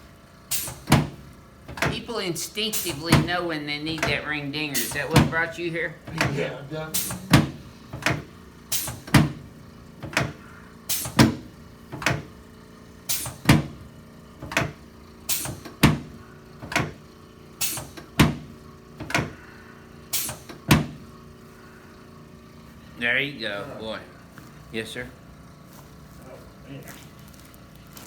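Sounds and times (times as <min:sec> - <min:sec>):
sharp knocks of back adjustment: 0:00.5 - 0:02.0, 0:04.8 - 0:12.4, 0:13.1 - 0:19.4, 0:20.1 - 0:21.1.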